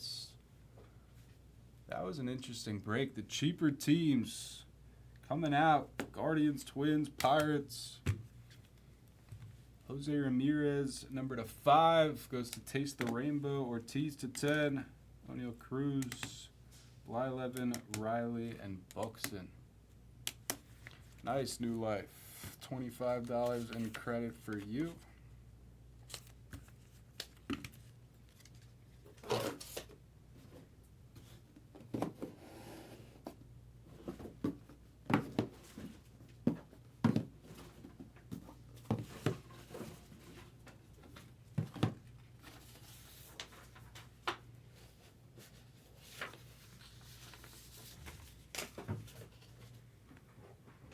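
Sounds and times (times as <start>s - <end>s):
trading cards and packaging handled: 20.3s - 25.1s, 26.0s - 30.0s, 35.2s - 49.8s.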